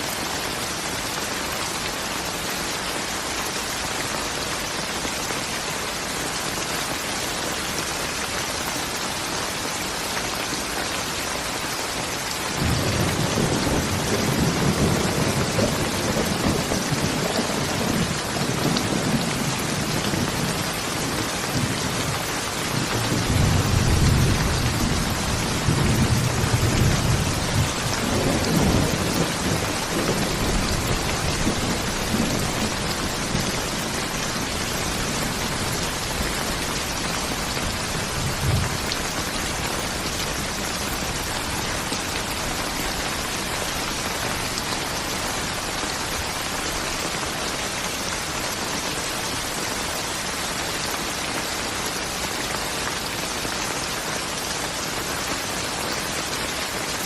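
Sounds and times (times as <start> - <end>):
steady rain: 0.0 - 57.0
low rumble of thunder: 12.6 - 42.4.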